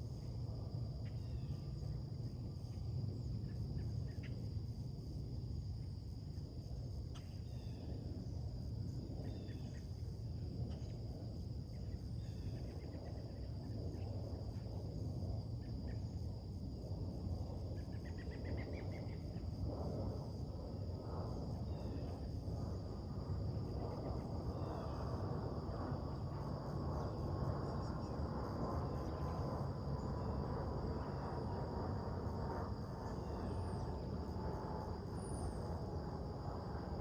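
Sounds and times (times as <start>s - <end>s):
high insect drone: 0.0s - 37.0s.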